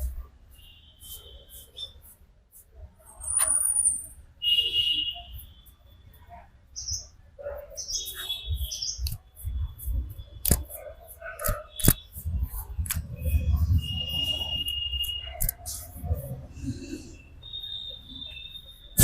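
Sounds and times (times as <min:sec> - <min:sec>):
small birds chirping: 0:00.5 - 0:02.2, 0:06.6 - 0:10.8
sharp clicks: 0:10.4 - 0:10.8, 0:11.4 - 0:12.0.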